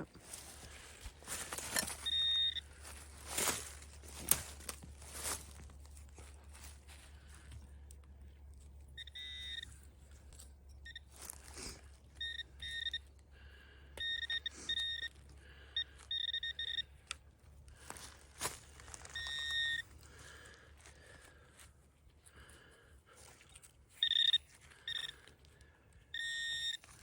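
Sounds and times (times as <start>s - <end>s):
metal detector beeps: 1.2s - 4.7s, 8.8s - 11.3s, 12.0s - 13.1s, 13.9s - 17.2s, 18.9s - 19.9s, 23.6s - 27.0s.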